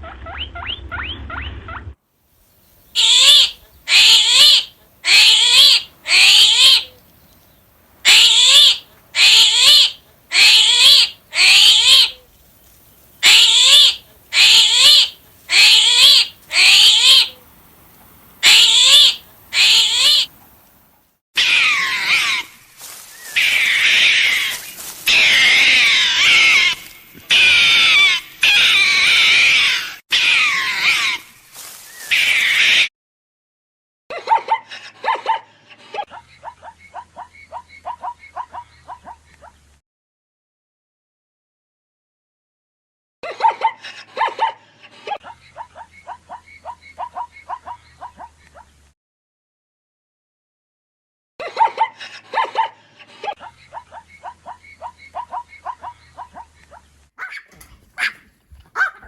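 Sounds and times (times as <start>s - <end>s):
high rising animal cries: 3.0s - 6.9s, 8.0s - 12.2s, 13.2s - 17.4s, 18.4s - 20.3s, 21.4s - 22.6s, 23.2s - 31.3s, 32.1s - 32.9s, 57.2s - 59.0s.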